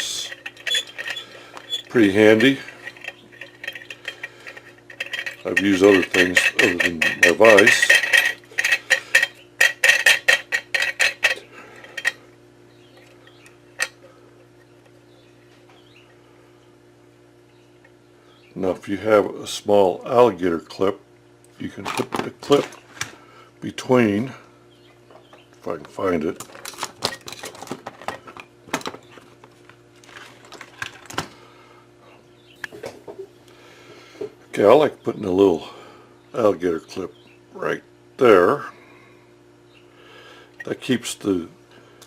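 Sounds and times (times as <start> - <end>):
small metal objects clinking: 0.0 - 12.2
small parts and tools clattering: 0.0 - 12.2, 12.9 - 14.1, 26.2 - 31.3.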